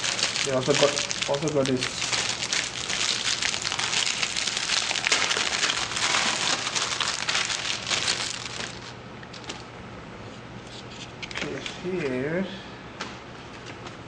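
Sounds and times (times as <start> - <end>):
packaging crinkling: 0.0 - 9.7.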